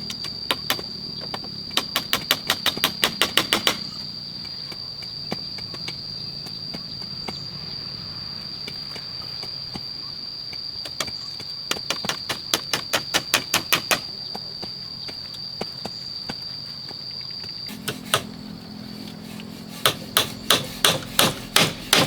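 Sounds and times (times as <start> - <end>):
steady high-pitched whine: 17.2 - 22.0
hammer blows on wood: 17.7 - 22.0.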